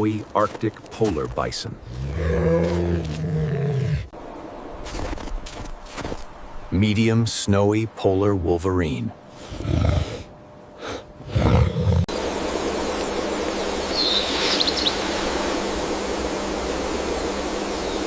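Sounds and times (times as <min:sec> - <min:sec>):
outdoor noise: 0:00.0 - 0:18.0
low animal growls: 0:11.2 - 0:12.1
high bird chirp: 0:13.9 - 0:15.0.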